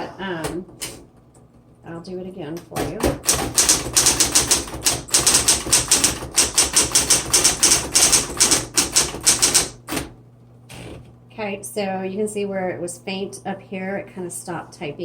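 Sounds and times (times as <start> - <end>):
electric typewriter keystrokes: 2.6 - 11.0.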